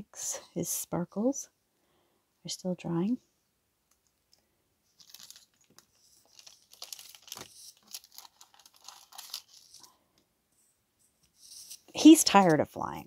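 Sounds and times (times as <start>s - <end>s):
paper rustling and crinkling: 4.9s - 10.0s, 11.2s - 12.6s.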